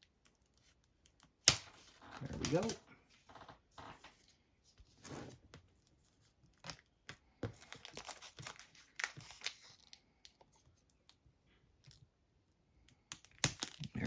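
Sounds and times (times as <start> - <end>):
plastic wrap crinkling: 7.6 - 10.4.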